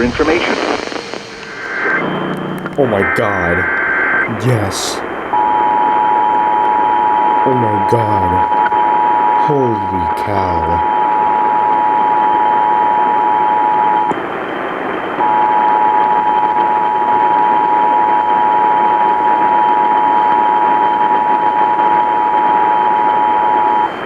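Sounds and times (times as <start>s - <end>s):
radio hiss: 0.0s - 11.6s.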